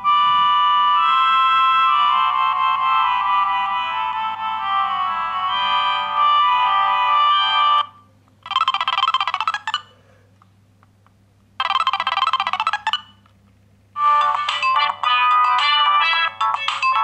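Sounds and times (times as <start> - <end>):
mobile phone ringtone melody: 0.0 - 9.9, 11.6 - 13.2, 14.0 - 17.0
trilling phone ring: 5.5 - 10.0, 11.6 - 13.2, 14.0 - 17.0.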